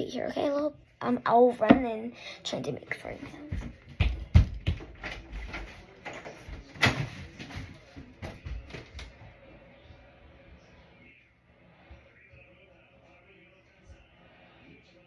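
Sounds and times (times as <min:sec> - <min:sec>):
child running footsteps: 0:03.3 - 0:05.5.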